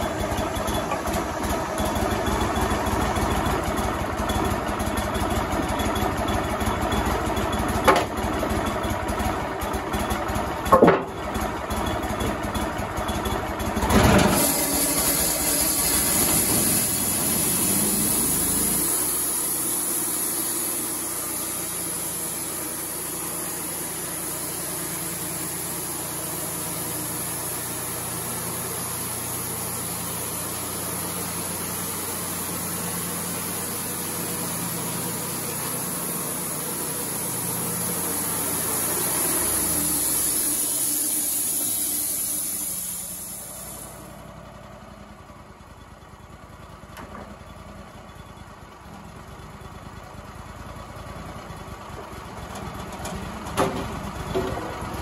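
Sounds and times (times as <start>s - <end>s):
sawmill engine running: 0.0s - 55.0s
high hiss: 14.4s - 44.2s.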